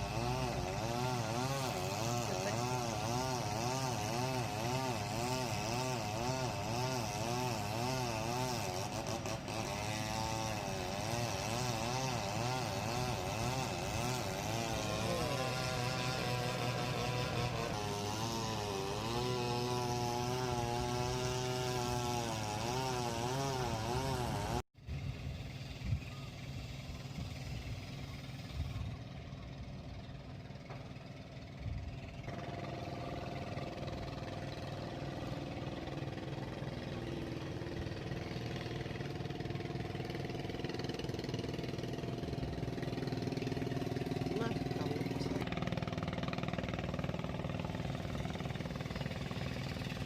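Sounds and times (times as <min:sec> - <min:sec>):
small engine running: 0:00.0 - 0:50.0.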